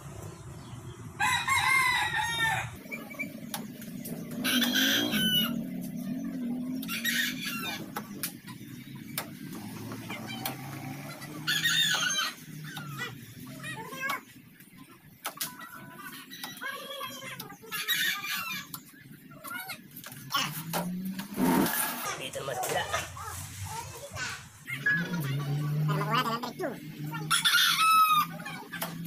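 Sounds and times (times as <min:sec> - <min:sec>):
roosters crowing: 0:00.3 - 0:08.1, 0:09.4 - 0:13.7, 0:17.6 - 0:18.7, 0:20.3 - 0:29.0.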